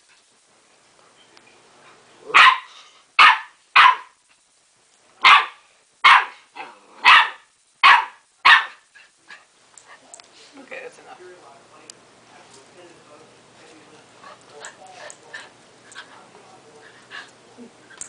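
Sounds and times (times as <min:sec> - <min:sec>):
dog barking: 0:02.3 - 0:04.2, 0:05.2 - 0:08.8.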